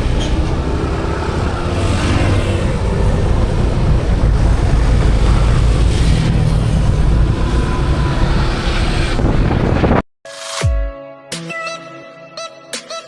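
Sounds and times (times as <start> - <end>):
vehicle running: 0.0 - 10.0
wind noise on microphone: 4.0 - 10.0
electronic music: 10.3 - 13.0.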